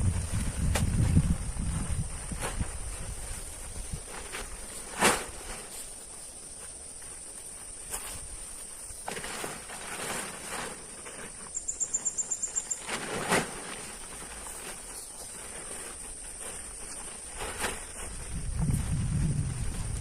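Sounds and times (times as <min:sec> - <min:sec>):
rustles and knocks: 0:00.0 - 0:11.6, 0:12.7 - 0:20.0
high insect chirps: 0:10.9 - 0:19.6
high-pitched insect drone: 0:11.5 - 0:12.8.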